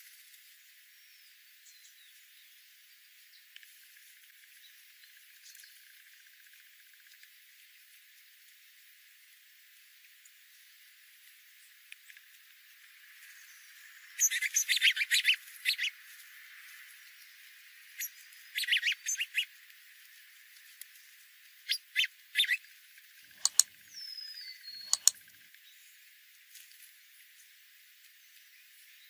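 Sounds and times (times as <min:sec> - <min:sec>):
small birds chirping: 0:01.0 - 0:07.4, 0:11.6 - 0:26.1
falling whistled bird call: 0:14.2 - 0:15.9, 0:18.0 - 0:19.5, 0:21.7 - 0:22.6
sharp clicks: 0:23.3 - 0:23.8, 0:24.8 - 0:25.2.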